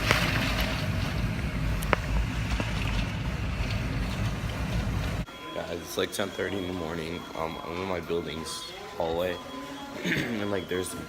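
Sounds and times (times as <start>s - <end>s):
wind buffeting microphone: 0.0s - 5.3s.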